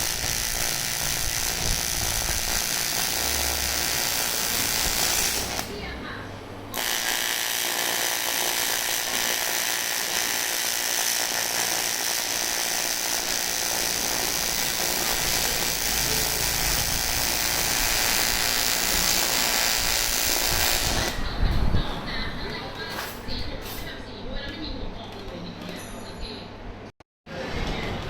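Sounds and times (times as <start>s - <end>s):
welding arc buzzing hiss: 0.0s - 6.0s, 6.7s - 21.3s.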